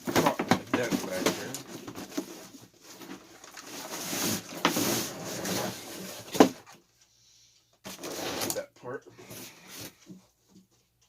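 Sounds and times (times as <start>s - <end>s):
cardboard packaging rustling: 0.0s - 6.8s.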